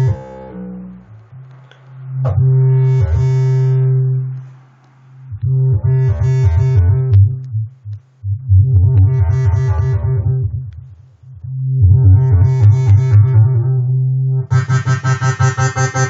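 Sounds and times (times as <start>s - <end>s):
synthesizer bass: 0.0s - 16.0s.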